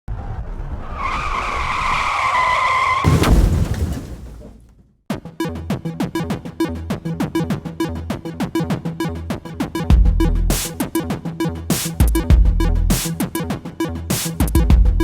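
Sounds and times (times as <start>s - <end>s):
electronic music with drum machine: 5.1s - 15.0s.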